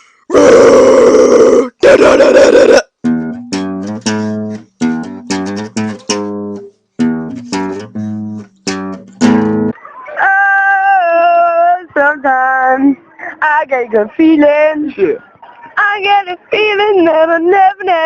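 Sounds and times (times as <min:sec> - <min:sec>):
acoustic guitar playing: 0:02.9 - 0:09.8.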